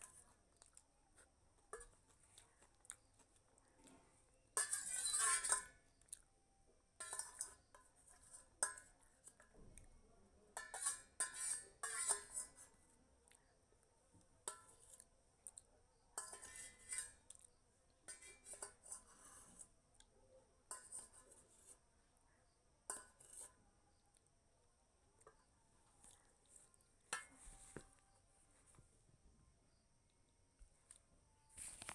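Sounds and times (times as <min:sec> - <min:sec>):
spoon scraping a dish: 0:00.0 - 0:06.0, 0:07.0 - 0:09.6, 0:10.5 - 0:12.9, 0:14.4 - 0:15.1, 0:16.2 - 0:19.8, 0:20.6 - 0:21.8, 0:22.9 - 0:23.6, 0:25.2 - 0:27.8.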